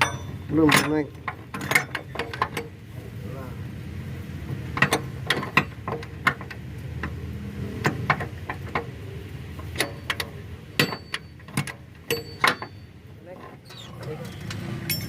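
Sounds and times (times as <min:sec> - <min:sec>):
hand tools clinking on metal: 0:00.0 - 0:02.7, 0:09.7 - 0:15.0.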